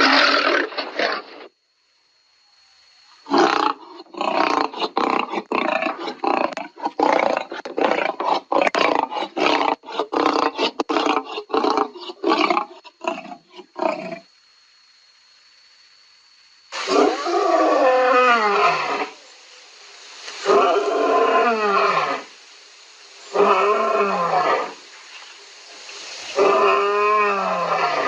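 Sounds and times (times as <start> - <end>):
lion roaring: 26.4 - 28.0.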